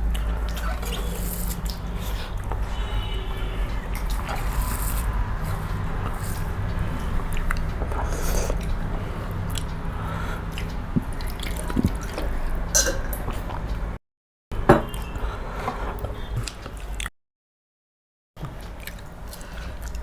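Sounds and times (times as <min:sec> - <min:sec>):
chewing and wet mouth noises: 0:00.0 - 0:14.0, 0:14.9 - 0:17.1, 0:18.4 - 0:20.0
steady low hum: 0:00.0 - 0:14.0.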